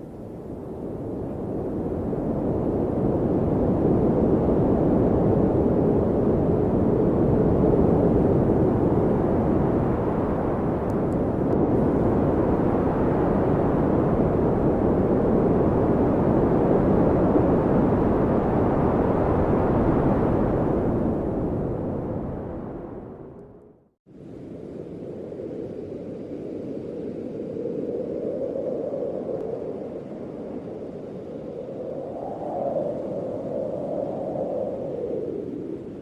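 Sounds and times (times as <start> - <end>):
low rumbling rush of noise: 0.5 - 28.6.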